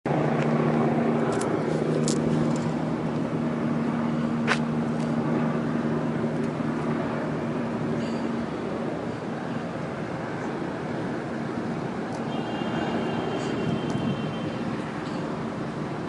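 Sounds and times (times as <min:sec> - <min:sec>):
helicopter drone: 0:00.1 - 0:16.0.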